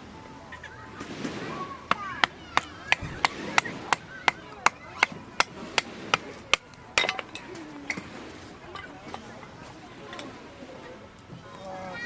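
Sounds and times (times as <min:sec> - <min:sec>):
hammer striking tent pegs: 0:01.9 - 0:08.1.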